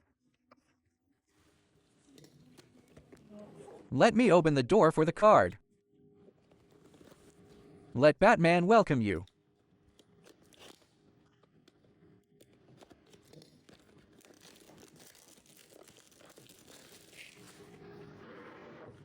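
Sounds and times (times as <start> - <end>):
packaging crinkling and tearing: 10.2 - 11.0, 12.7 - 17.7.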